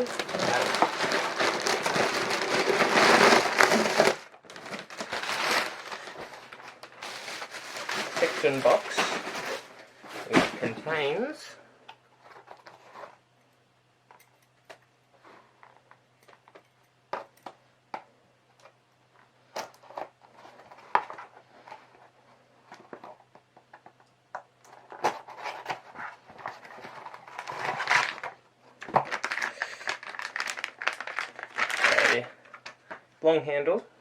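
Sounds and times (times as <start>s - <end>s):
packaging rustling and crinkling: 0.0s - 11.2s, 24.7s - 33.0s.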